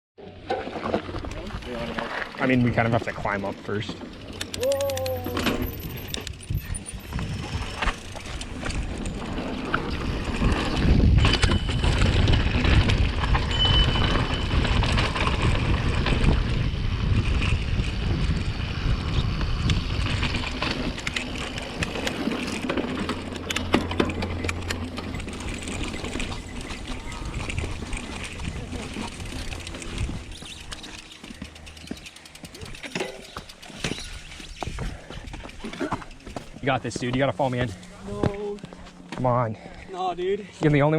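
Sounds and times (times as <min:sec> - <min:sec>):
bike tyres rolling over dirt: 0:00.2 - 0:39.4
bike clicks and rattles: 0:00.3 - 0:40.9
wind rumbling on microphone: 0:04.2 - 0:36.7.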